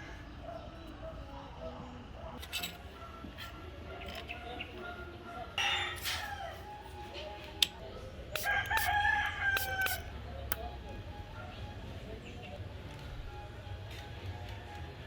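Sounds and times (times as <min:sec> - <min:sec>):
rooster crowing: 0:05.6 - 0:06.8, 0:08.4 - 0:10.1.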